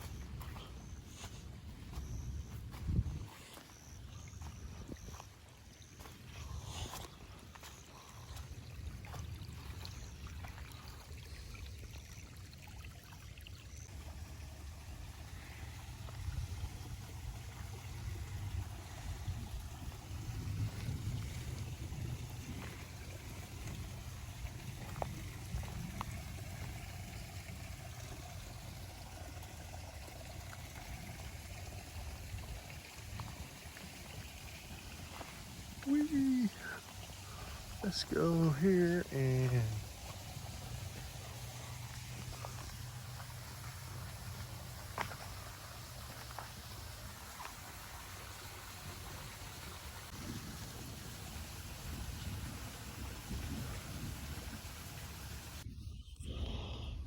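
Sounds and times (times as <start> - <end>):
water flowing and trickling: 0.0 - 55.7
steady low rumble: 13.9 - 36.0, 36.8 - 48.0.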